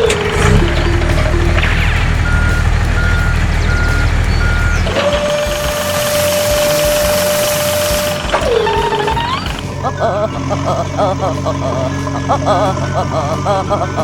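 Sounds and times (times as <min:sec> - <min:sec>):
reversing alarm beeps: 0:00.0 - 0:09.8
construction machine engine: 0:00.0 - 0:14.0.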